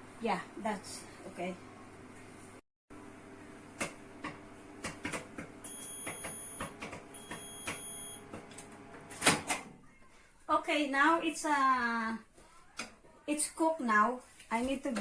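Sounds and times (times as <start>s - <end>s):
microwave oven hum: 3.0s - 9.4s.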